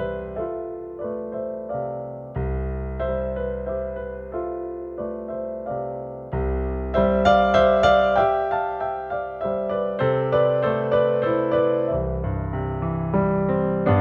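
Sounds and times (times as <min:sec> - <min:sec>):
deep bass piano chord: 0:00.0 - 0:14.0
solo piano tune: 0:00.0 - 0:14.0.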